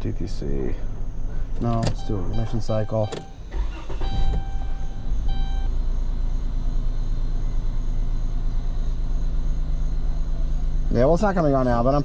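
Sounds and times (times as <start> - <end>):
minivan engine idling: 0.0 - 12.0
dashboard chime: 2.0 - 3.4.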